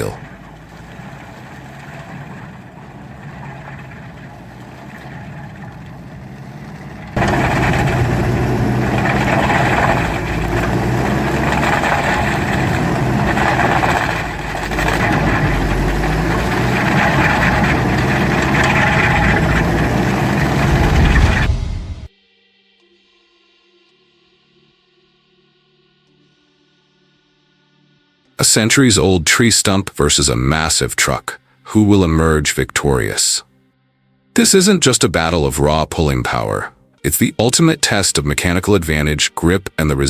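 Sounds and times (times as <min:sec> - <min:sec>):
heavy machine engine running: 0:00.0 - 0:22.1.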